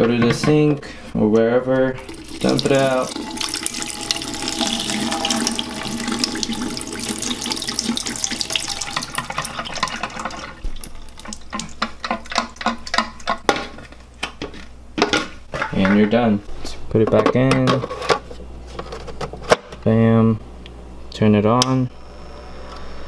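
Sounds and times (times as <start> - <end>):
water pouring into a sink: 2.0 - 12.4.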